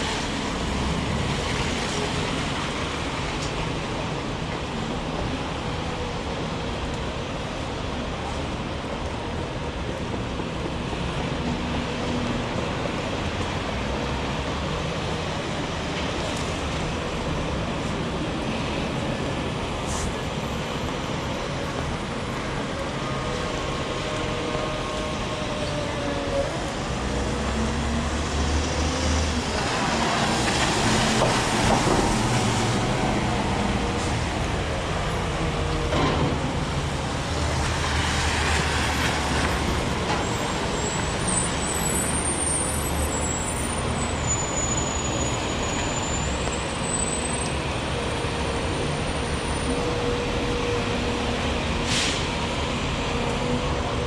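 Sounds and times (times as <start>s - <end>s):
heavy rain: 0.0s - 54.0s
tyre hiss on wet road: 51.7s - 52.8s.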